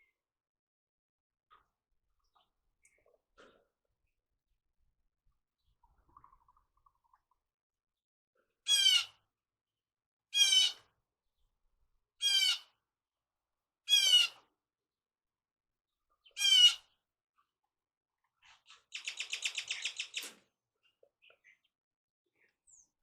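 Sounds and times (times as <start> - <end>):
bird squawking: 8.7 - 9.1, 10.4 - 10.8, 12.2 - 12.7, 13.9 - 14.4, 16.4 - 16.8.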